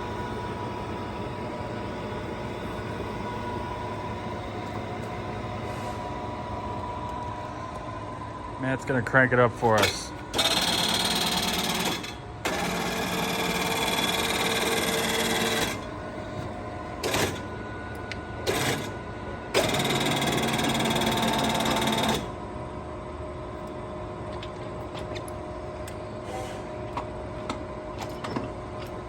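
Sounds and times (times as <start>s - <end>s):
lathe machine whine: 0.0s - 22.6s
low machine hum: 0.0s - 29.0s.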